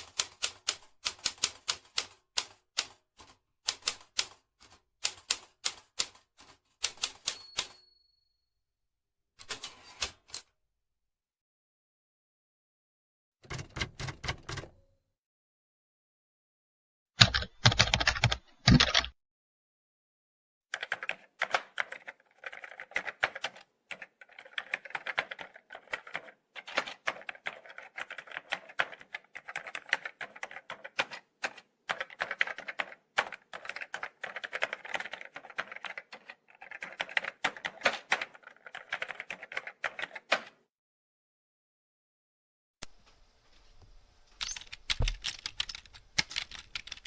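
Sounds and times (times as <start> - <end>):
typing on a keyboard: 0.0 - 7.8, 17.2 - 19.2, 20.8 - 40.6, 44.4 - 47.0.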